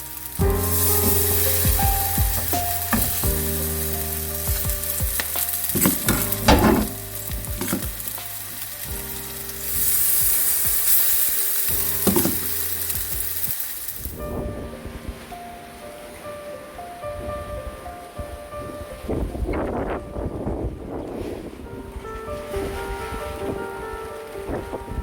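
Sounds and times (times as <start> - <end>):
sizzling hiss: 0.0 - 14.5
soft background music: 0.0 - 25.0
clicks and knocks: 1.8 - 3.4, 5.2 - 8.2.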